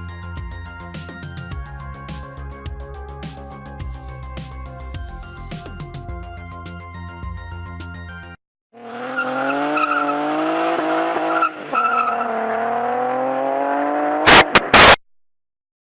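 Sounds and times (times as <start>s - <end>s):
car droning: 8.8s - 15.0s.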